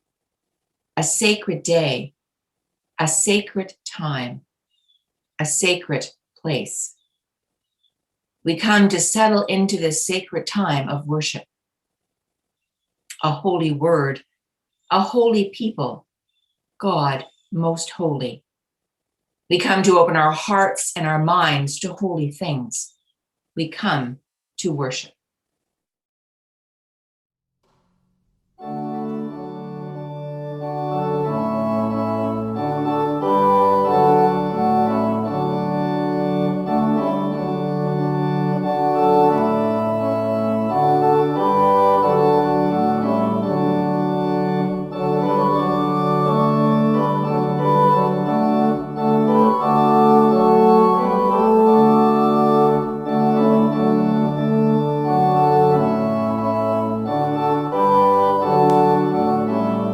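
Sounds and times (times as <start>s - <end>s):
organ playing sustained chords: 28.6s - 59.9s.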